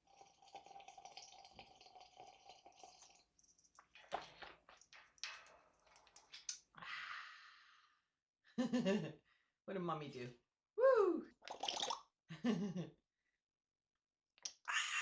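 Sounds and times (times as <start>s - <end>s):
person slurping coffee: 0.0s - 3.2s, 11.4s - 12.0s.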